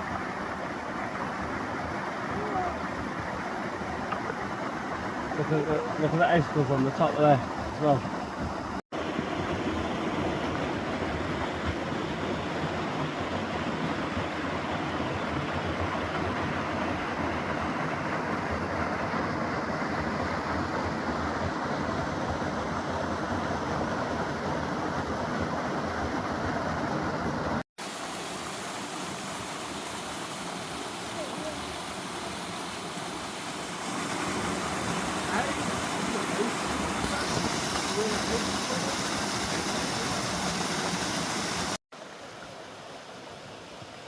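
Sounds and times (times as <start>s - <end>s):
water rushing over waterfall: 0.0s - 44.0s.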